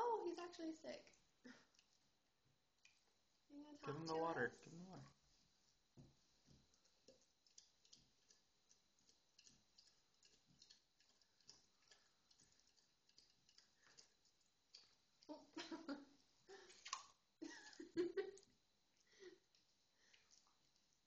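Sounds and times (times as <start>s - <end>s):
puppy lapping water: 6.3s - 21.0s.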